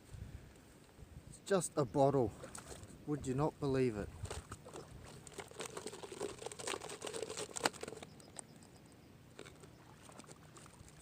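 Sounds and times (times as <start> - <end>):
plastic bottle crinkling and clicking: 4.2 - 8.5, 9.4 - 10.8.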